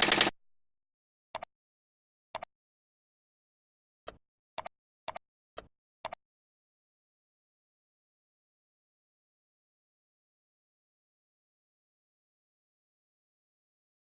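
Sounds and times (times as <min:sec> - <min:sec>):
computer mouse clicking: 0:00.0 - 0:00.3.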